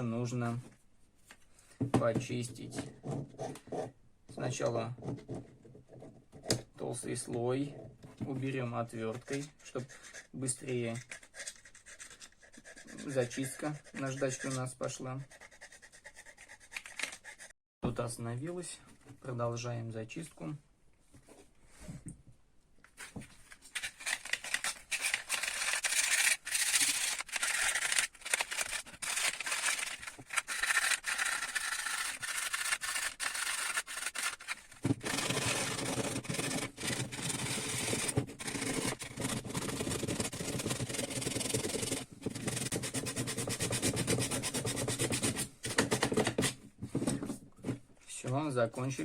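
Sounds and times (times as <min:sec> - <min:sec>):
sandpaper scrubbing metal: 0:24.5 - 0:39.0.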